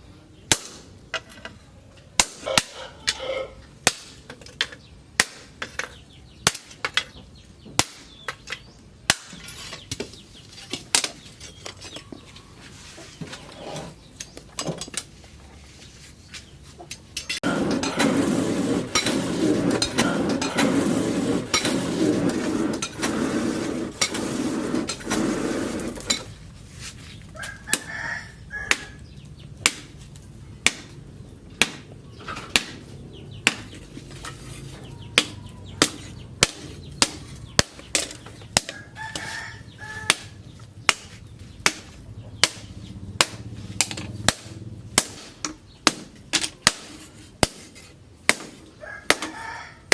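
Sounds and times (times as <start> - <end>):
chickens clucking: 2.4 - 3.8, 32.1 - 41.4.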